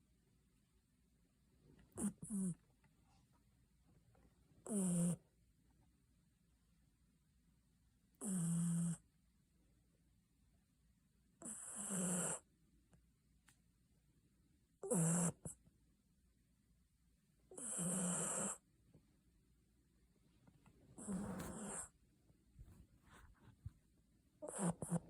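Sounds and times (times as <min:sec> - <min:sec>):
dog snoring: 0:01.9 - 0:02.6, 0:04.6 - 0:05.2, 0:08.2 - 0:09.0, 0:11.4 - 0:12.5, 0:14.8 - 0:15.6, 0:17.5 - 0:18.6, 0:21.0 - 0:22.0, 0:24.4 - 0:25.0.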